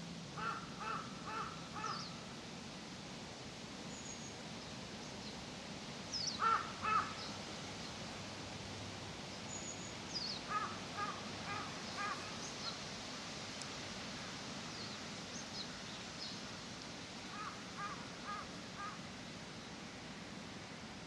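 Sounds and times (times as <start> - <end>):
steady outdoor hiss: 0.0 - 21.0
crow cawing: 0.4 - 2.0, 6.4 - 7.2, 10.5 - 12.3, 17.3 - 19.0
small birds chirping: 6.1 - 8.0, 9.3 - 12.8.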